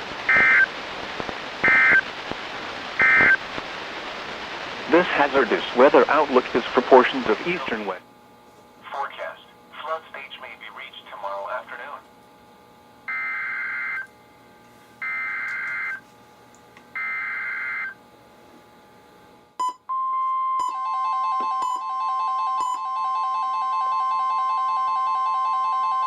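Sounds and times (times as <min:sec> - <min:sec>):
steady warning alarm tone: 0:00.3 - 0:00.7, 0:01.6 - 0:02.0, 0:03.0 - 0:03.4, 0:13.1 - 0:14.1, 0:15.0 - 0:16.0, 0:17.0 - 0:18.0, 0:19.9 - 0:26.0
buzzing digital data tones: 0:01.6 - 0:02.1, 0:03.0 - 0:03.4.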